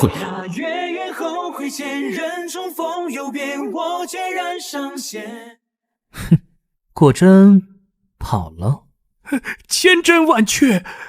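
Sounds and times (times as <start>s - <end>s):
person singing: 0.0s - 5.6s.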